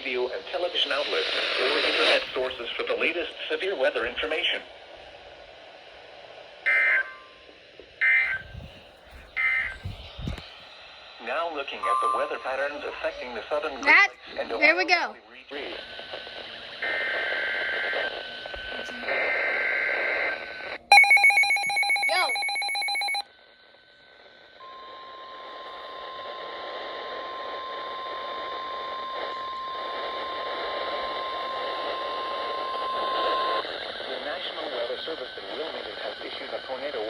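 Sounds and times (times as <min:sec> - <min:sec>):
radio static: 0:00.0 - 0:04.7, 0:08.0 - 0:10.5, 0:11.4 - 0:20.9, 0:25.2 - 0:37.0
steady warning tone: 0:06.6 - 0:10.4, 0:11.2 - 0:14.8, 0:20.9 - 0:23.2, 0:24.5 - 0:37.0
electronic alarm: 0:06.7 - 0:07.4, 0:08.0 - 0:08.8, 0:09.4 - 0:10.2, 0:20.9 - 0:23.2
screeching data header: 0:20.9 - 0:23.2.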